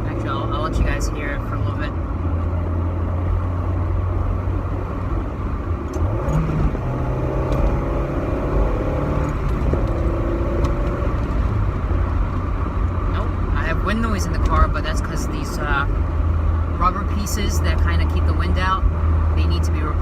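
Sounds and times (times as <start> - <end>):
car engine humming: 0.0 - 20.0
wind noise: 4.5 - 13.4.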